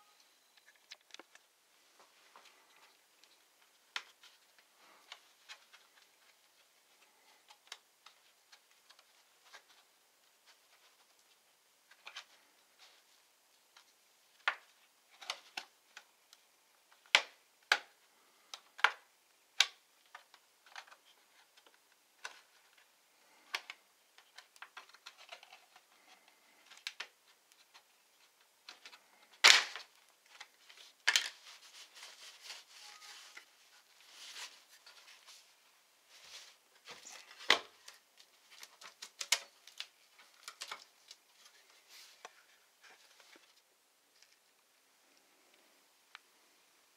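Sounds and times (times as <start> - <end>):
clicks and taps on laptop parts: 18.5 - 22.5.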